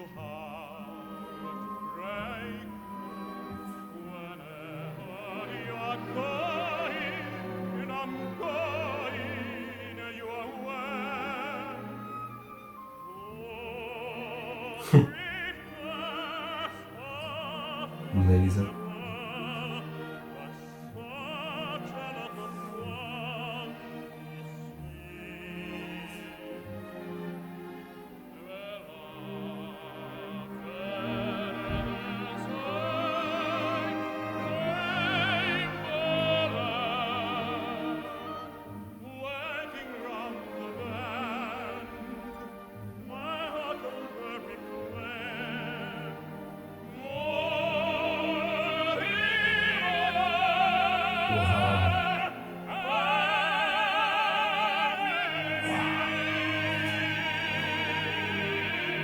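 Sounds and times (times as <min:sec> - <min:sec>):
operatic tenor singing: 0:00.0 - 0:59.0
orchestra playing: 0:17.6 - 0:24.3, 0:30.9 - 0:59.0.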